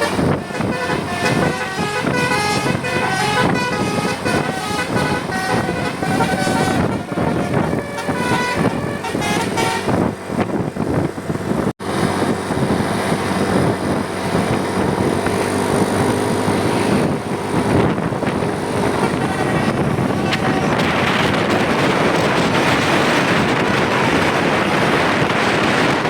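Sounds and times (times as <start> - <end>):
musical air horn tune: 0.0 - 10.1
bus engine and road noise: 0.0 - 26.0.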